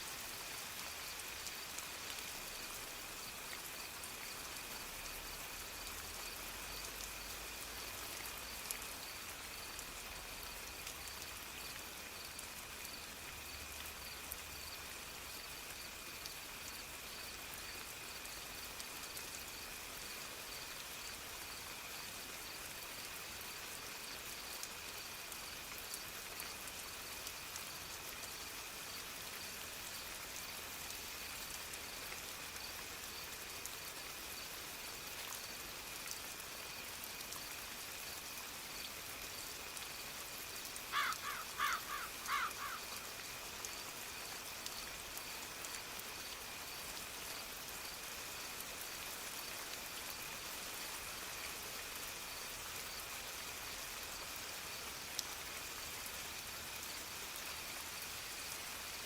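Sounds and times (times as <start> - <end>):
soft steady rain: 0.0 - 59.0
crow cawing: 40.9 - 43.0.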